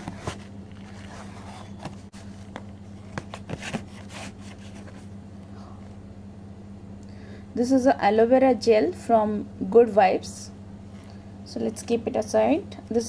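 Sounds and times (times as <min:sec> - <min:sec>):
packaging rustling and tapping: 0:00.0 - 0:05.1.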